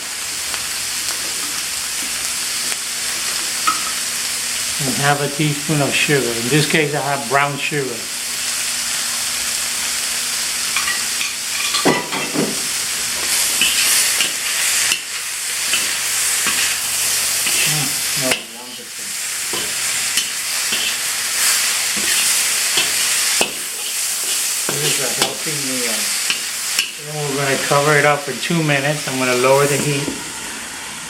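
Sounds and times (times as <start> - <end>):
food sizzling in a hot pan: 0.0 - 31.0
spatula scraping and clacking: 13.2 - 18.5, 19.5 - 21.0, 21.9 - 25.4.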